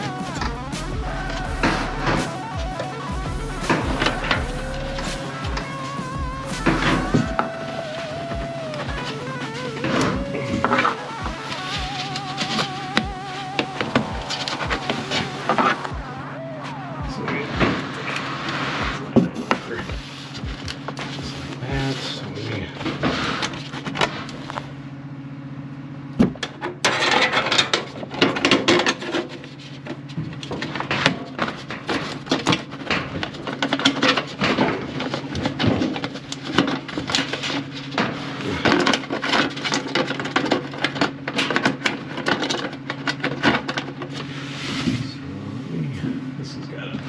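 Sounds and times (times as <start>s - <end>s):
steady low hum: 0.0s - 26.6s.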